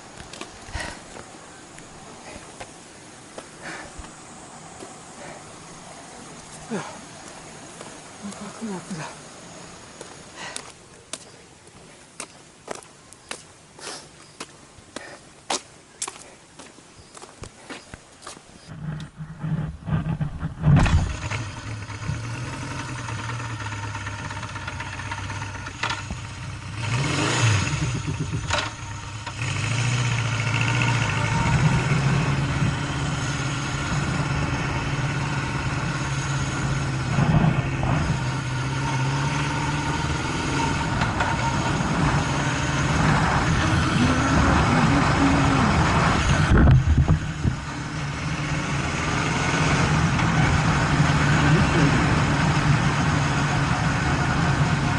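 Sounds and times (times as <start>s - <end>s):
motorcycle engine starting and idling: 18.7s - 54.9s.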